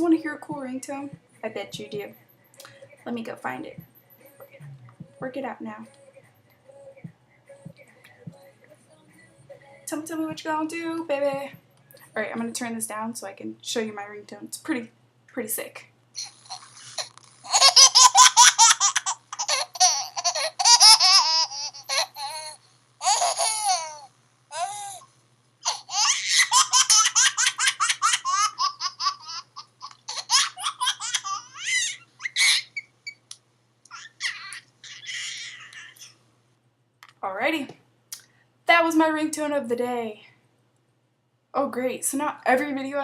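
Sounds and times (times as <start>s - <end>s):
baby-like laughter ringtone: 16.2s - 22.4s.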